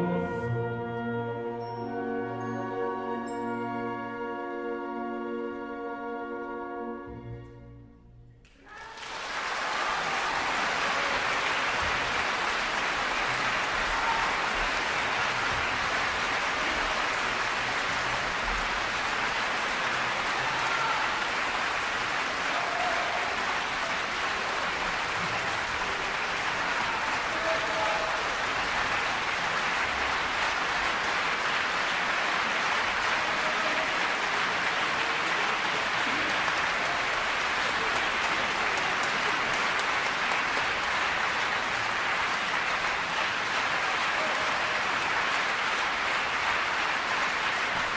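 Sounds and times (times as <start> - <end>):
orchestral chord: 0.0 - 8.2
audience applauding: 8.4 - 47.9.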